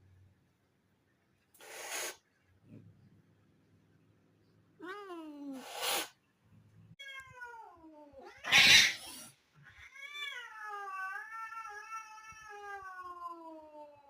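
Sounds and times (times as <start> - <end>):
cat hissing: 1.6 - 2.3, 5.5 - 6.2, 8.3 - 9.4
angry cat yowling: 8.2 - 14.0.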